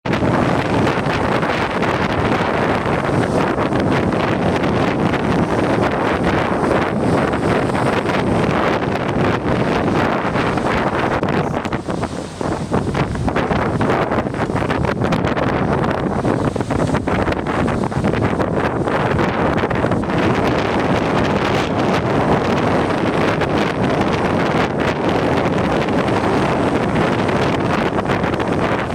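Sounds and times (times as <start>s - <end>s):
wind buffeting microphone: 0.0s - 28.9s.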